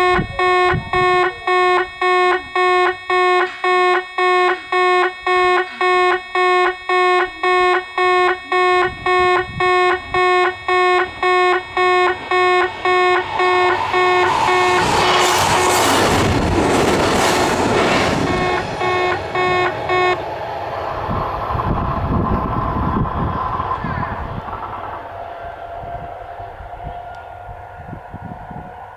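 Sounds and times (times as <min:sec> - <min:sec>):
level crossing bell ringing: 0:00.0 - 0:14.3
train rushing past: 0:10.5 - 0:28.9.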